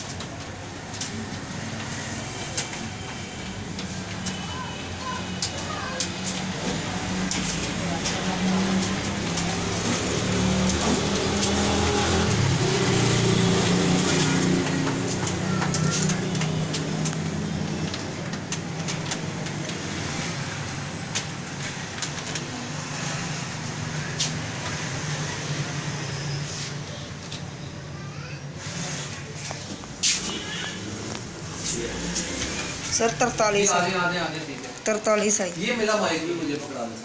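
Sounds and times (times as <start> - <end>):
passing vehicle engine: 6.6 - 27.4, 28.9 - 34.6.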